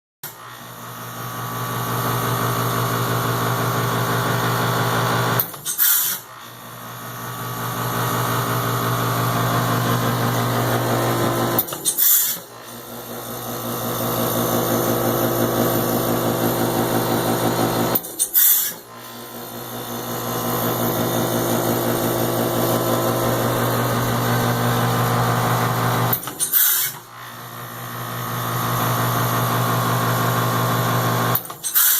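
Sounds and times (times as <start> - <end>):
heat pump sharp burst: 5.0 - 29.8
heat pump humming: 6.6 - 11.8, 12.4 - 18.3, 19.0 - 26.4.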